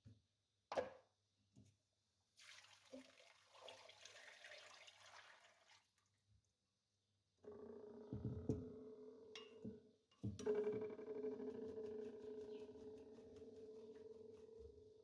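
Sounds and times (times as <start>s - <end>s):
juice pouring and splashing: 2.4s - 6.1s.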